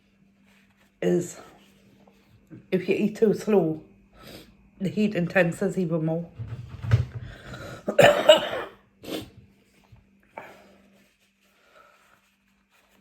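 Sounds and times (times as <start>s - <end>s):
woman coughing: 7.8s - 9.3s.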